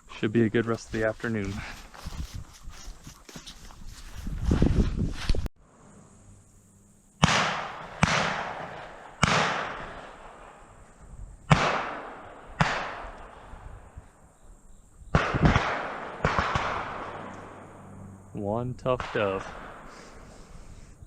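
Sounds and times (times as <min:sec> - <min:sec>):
shotgun shots echoing: 0:07.2 - 0:10.7, 0:11.5 - 0:13.6, 0:15.1 - 0:17.8, 0:18.9 - 0:20.2.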